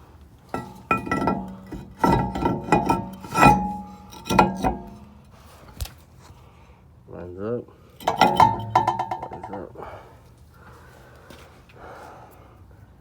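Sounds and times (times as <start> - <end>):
brake rotor clanking against hub: 0.5 - 5.3, 8.0 - 9.8.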